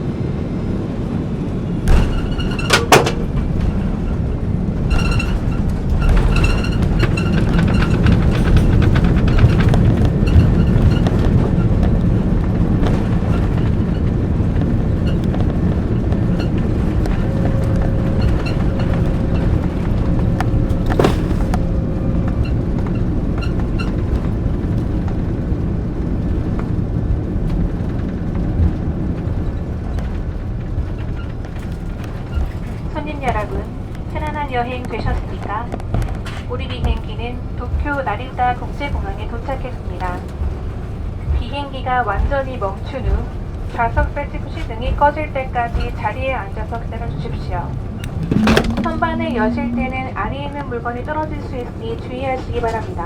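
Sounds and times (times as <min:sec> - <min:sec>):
airplane cabin knocks and rattles: 0:01.4 - 0:53.0
jet engine roar: 0:47.1 - 0:51.6.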